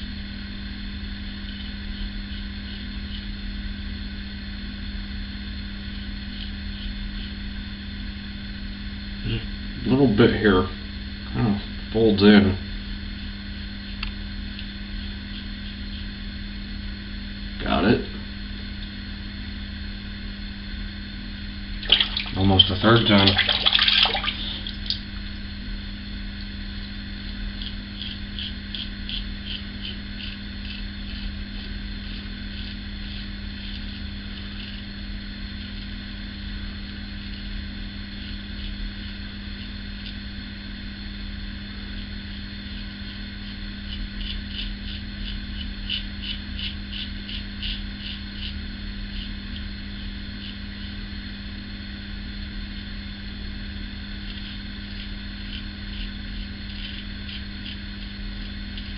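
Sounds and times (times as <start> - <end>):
razor scraping stubble: 5.9 - 7.5, 13.2 - 16.2, 21.8 - 25.3, 26.9 - 36.1, 37.3 - 40.4, 41.9 - 51.0, 54.1 - 58.9
low hum: 15.8 - 37.4.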